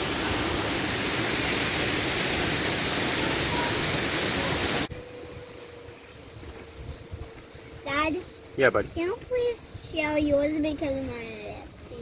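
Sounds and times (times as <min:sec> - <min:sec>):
waterfall rushing: 0:00.0 - 0:04.9.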